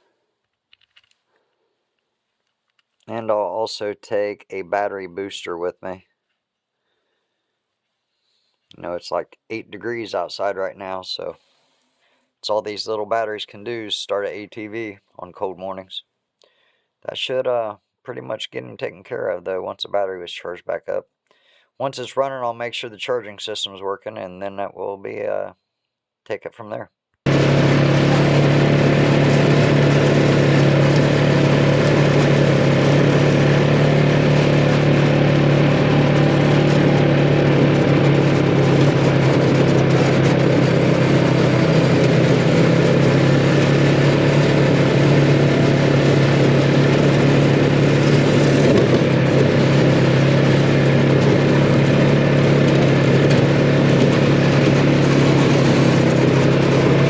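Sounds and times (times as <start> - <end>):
atv engine idling: 27.3 - 57.0.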